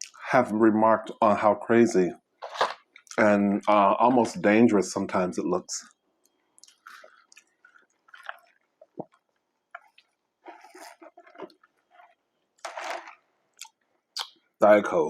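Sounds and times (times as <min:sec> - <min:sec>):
person chewing food: 0:06.5 - 0:14.4.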